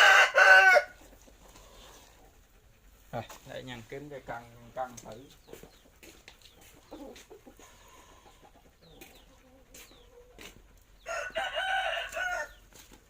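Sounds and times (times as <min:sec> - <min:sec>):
rooster crowing: 0:00.0 - 0:01.0, 0:11.0 - 0:12.6.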